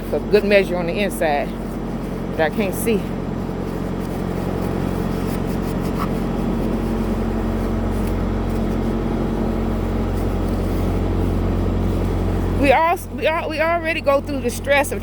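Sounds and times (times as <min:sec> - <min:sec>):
truck engine idling: 0:00.0 - 0:15.0.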